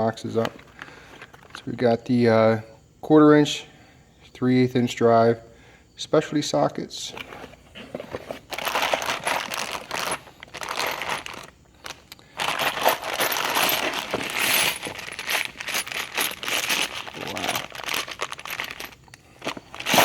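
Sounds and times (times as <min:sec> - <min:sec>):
metal tools clinking: 0:08.1 - 0:20.0.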